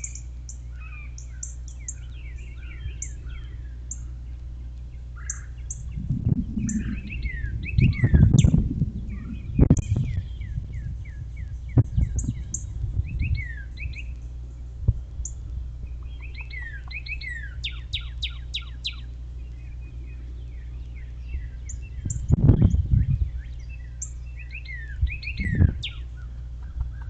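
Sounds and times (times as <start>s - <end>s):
songbirds singing: 0.0s - 27.0s
steady low rumble: 0.0s - 27.0s
low thumps: 5.8s - 10.7s.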